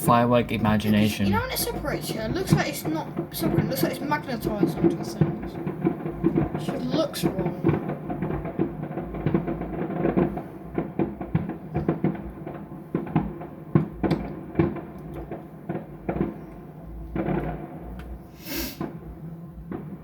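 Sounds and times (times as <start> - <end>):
firework hiss: 0.0 - 16.5, 18.2 - 19.0
fireworks bangs and crackles: 0.0 - 20.0.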